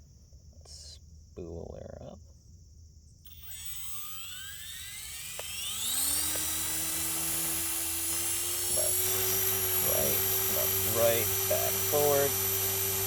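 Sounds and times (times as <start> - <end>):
rc helicopter rotor whine: 3.2 - 13.0.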